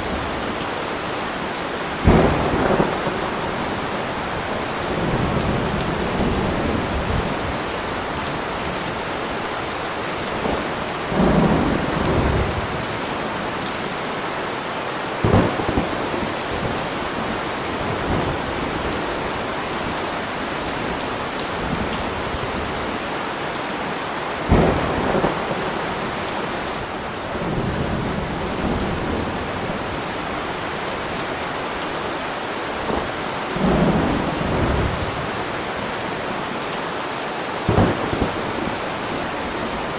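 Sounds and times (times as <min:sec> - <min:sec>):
heavy rain falling: 0:00.0 - 0:39.9
thunder rumbling and cracking: 0:02.0 - 0:09.0, 0:10.3 - 0:13.7, 0:15.2 - 0:22.8, 0:24.4 - 0:31.2, 0:37.7 - 0:39.9.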